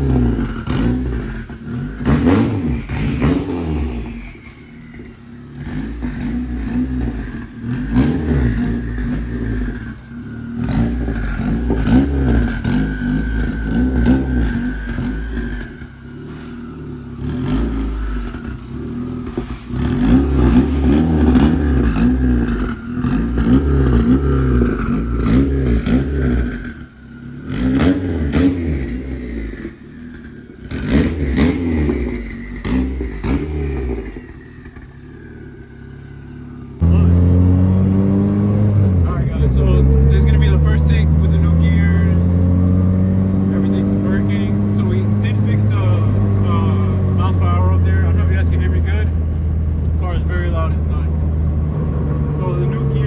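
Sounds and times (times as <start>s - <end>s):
car engine revving: 0.0s - 53.0s
loud steady drone: 36.8s - 53.0s.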